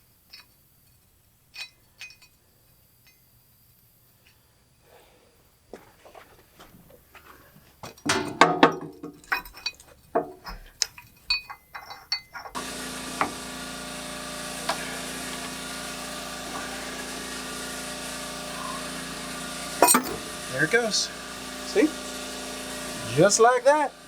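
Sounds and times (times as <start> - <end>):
steady mechanical hum: 0.0 - 24.0
tools clinking on steel: 0.3 - 3.4, 7.9 - 12.6, 19.8 - 20.7.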